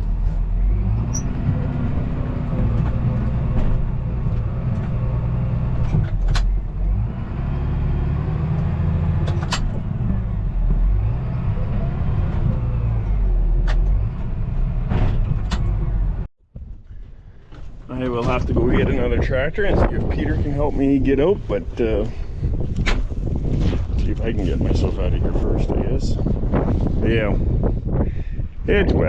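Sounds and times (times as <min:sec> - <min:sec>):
tractor engine revving: 0:00.0 - 0:16.3.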